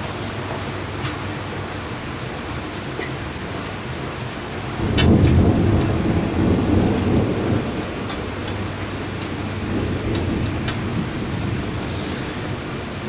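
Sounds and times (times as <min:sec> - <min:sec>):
rolling thunder: 0:04.5 - 0:13.0
steady hiss: 0:04.5 - 0:13.0.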